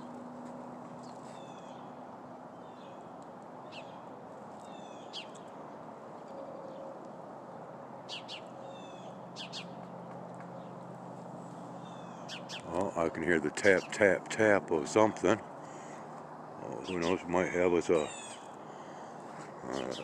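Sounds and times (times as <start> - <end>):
sparrows chirping: 1.0 - 2.0, 2.6 - 4.0, 4.6 - 5.5, 8.1 - 9.9, 11.5 - 19.0, 19.7 - 20.0.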